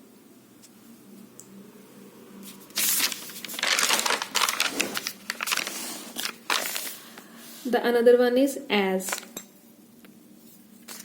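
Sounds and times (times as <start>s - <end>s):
paper rustling and crinkling: 2.4s - 7.2s, 10.8s - 11.0s.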